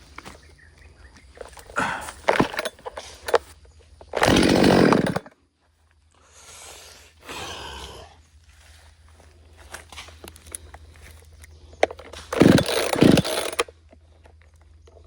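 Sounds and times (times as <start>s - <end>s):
chainsaw engine revving: 1.6s - 5.4s, 11.9s - 13.8s.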